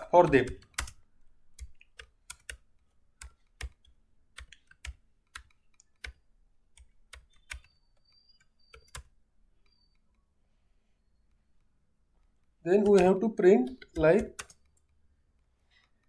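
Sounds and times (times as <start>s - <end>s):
computer keyboard typing: 0.0s - 10.0s, 12.7s - 15.0s.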